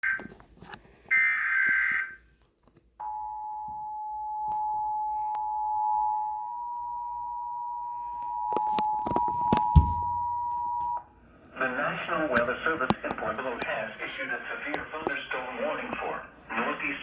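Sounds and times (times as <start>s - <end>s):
two-tone attention signal: 3.2s - 11.0s.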